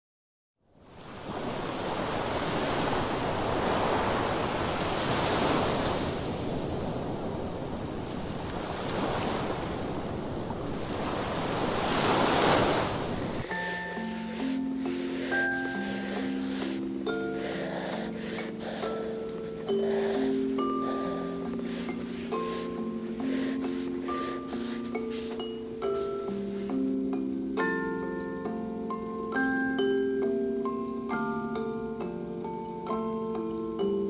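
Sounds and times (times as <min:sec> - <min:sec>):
ocean waves washing in: 0:01.0 - 0:16.9
steady hiss: 0:13.3 - 0:26.9.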